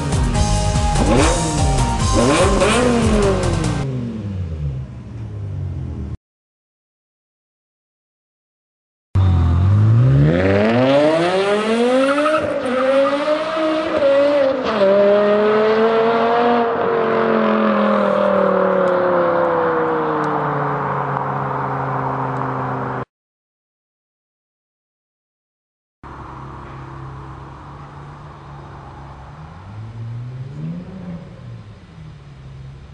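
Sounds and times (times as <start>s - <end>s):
car exhaust under hard acceleration: 0.9s - 6.1s.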